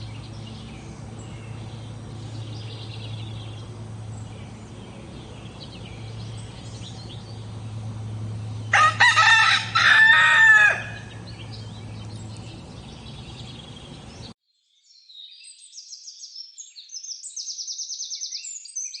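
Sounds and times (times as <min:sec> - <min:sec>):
farmyard background: 0:00.0 - 0:14.4
small birds chirping trills: 0:00.0 - 0:19.0
rooster crowing: 0:08.7 - 0:11.7.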